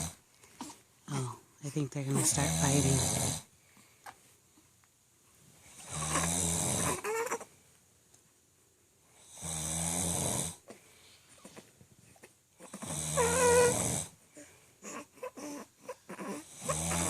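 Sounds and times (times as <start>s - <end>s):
quiet breaths: 0.0s - 17.0s
man snoring loudly: 2.4s - 3.4s, 5.8s - 7.0s, 9.2s - 10.6s, 12.8s - 14.1s, 16.4s - 17.0s.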